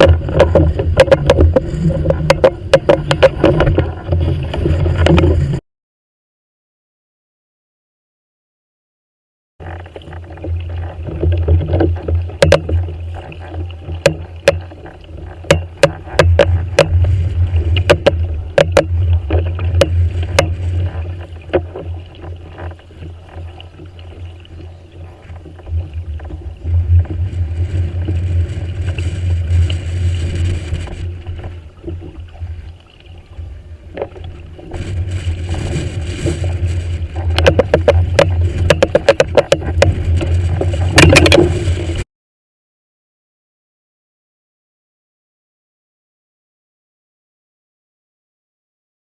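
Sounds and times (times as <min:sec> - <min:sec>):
kayak rumble and water: 0:00.0 - 0:05.6, 0:09.6 - 0:42.0.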